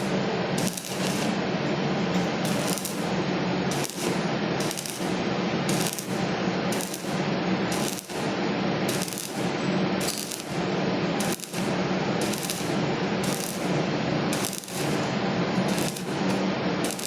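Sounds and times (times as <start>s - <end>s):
welding arc crackling: 0.0s - 17.0s.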